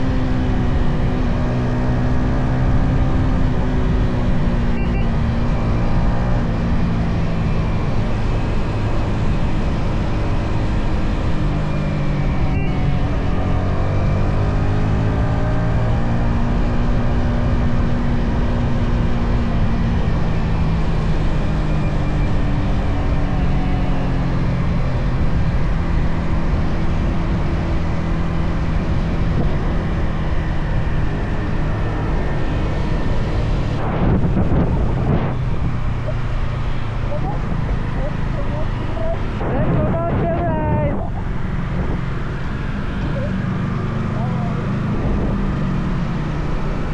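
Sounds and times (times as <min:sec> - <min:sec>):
motorcycle engine and exhaust: 0:00.0 - 0:46.9
wind on microphone: 0:32.8 - 0:44.0, 0:44.7 - 0:46.0.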